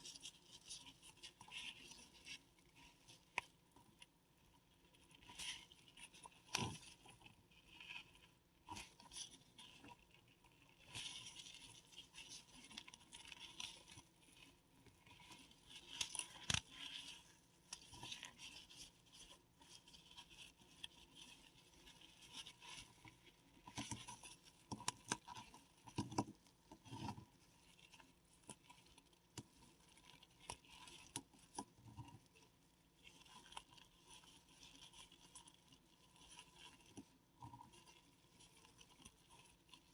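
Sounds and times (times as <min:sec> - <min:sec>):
mothballs crackling and crunching: 0:08.6 - 0:20.0.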